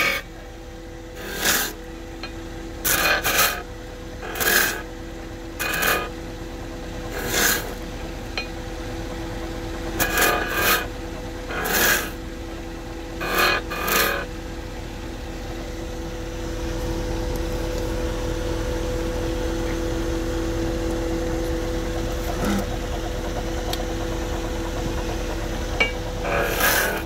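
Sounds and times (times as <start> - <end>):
tool scraping spinning wood: 0.0 - 0.4, 1.1 - 6.2, 6.8 - 8.5, 9.8 - 14.4, 21.8 - 27.0
wood lathe motor humming: 0.0 - 15.7, 19.6 - 27.0.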